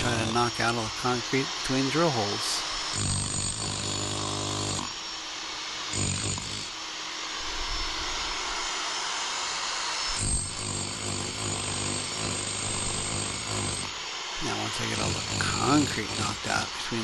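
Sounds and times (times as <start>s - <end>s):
demolition hammer chiselling concrete: 0.0s - 5.0s, 5.9s - 6.8s, 10.1s - 17.0s.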